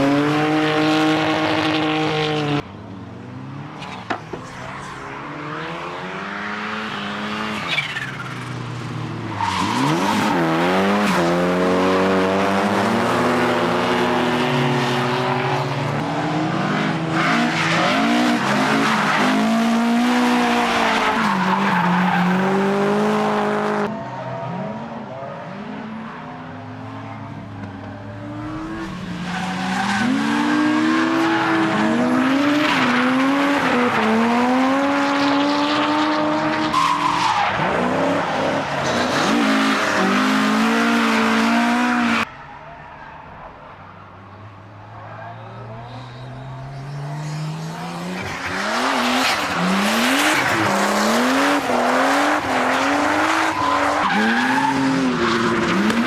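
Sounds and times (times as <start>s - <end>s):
car engines revving: 0.0s - 56.0s
tyre squeal and skidding: 6.8s - 11.6s, 13.1s - 23.4s, 28.5s - 35.4s, 36.4s - 43.4s, 44.9s - 56.0s.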